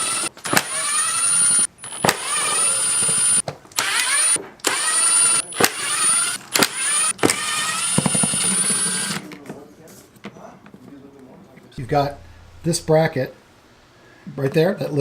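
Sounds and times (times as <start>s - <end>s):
cordless drill whining: 0.0s - 9.3s.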